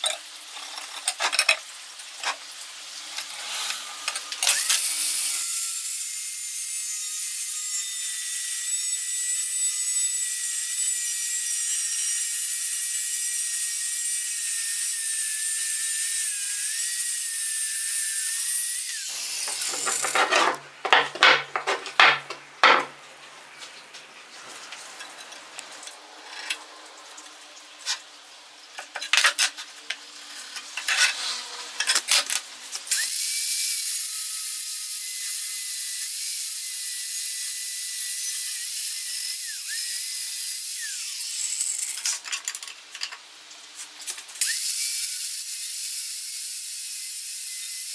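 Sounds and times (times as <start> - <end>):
metal scraping strokes: 2.2 - 4.8, 18.9 - 22.1, 30.3 - 32.4.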